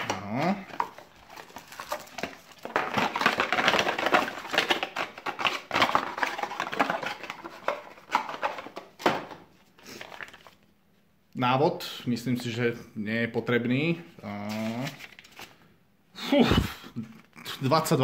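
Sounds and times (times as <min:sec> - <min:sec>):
cardboard box and packing rustling: 0:00.0 - 0:10.6.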